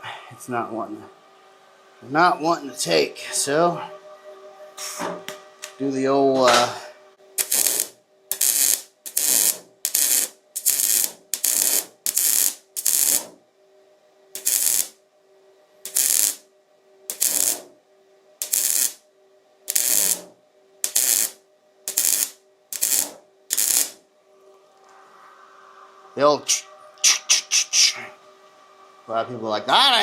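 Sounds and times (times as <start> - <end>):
faint welder hum: 5.2 - 25.0
welding arc crackling bursts: 7.4 - 13.3, 14.4 - 15.0, 15.8 - 16.4, 17.1 - 17.7, 18.4 - 19.0, 19.7 - 24.0.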